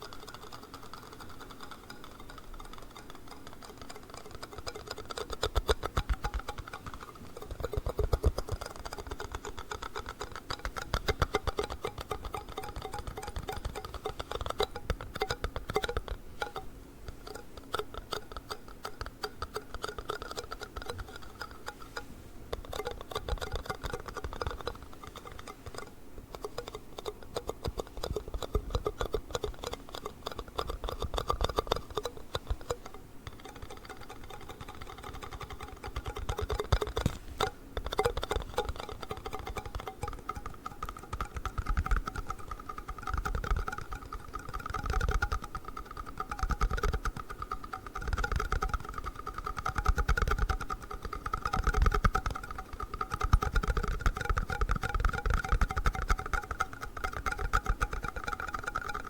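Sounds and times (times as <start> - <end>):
tapping on plastic cups: 10.4 - 22.0, 30.5 - 59.0.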